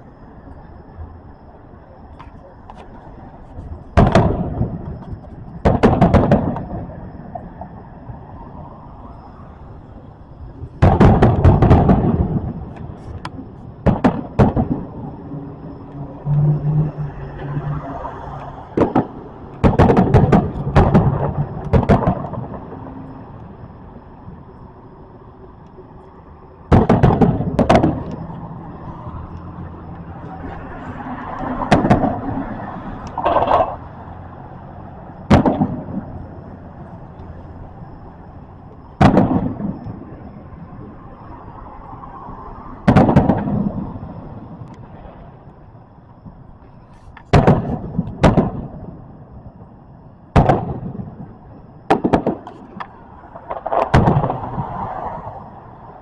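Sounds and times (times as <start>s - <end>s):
fireworks bangs and crackles: 2.7s - 7.8s, 9.7s - 15.9s, 18.6s - 23.3s, 26.7s - 28.9s, 29.7s - 33.9s, 35.2s - 40.9s, 42.8s - 45.6s, 47.1s - 55.1s.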